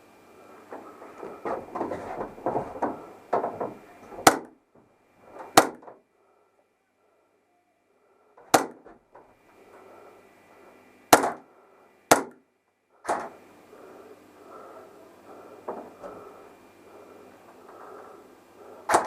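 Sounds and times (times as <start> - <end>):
airsoft gun shots: 4.2 - 4.6, 5.6 - 5.9, 8.5 - 8.8, 11.1 - 11.4, 12.1 - 12.4.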